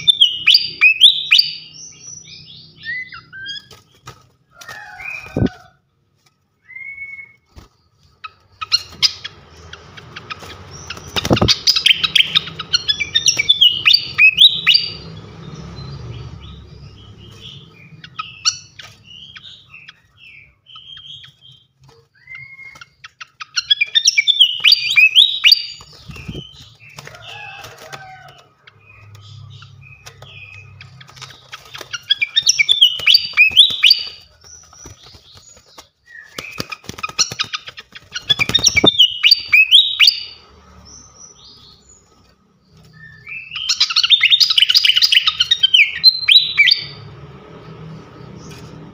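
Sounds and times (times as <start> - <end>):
songbird singing high chirps: 10.7 - 21.6, 23.4 - 26.9, 32.0 - 35.4, 38.2 - 42.0, 42.9 - 47.0.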